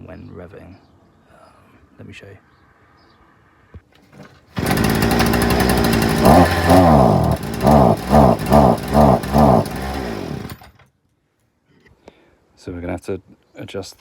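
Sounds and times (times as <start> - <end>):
two-stroke engine revving: 4.6 - 10.7.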